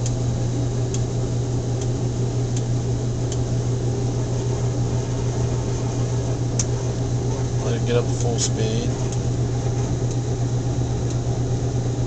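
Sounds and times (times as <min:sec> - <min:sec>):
washing machine motor hum: 0:00.0 - 0:12.0.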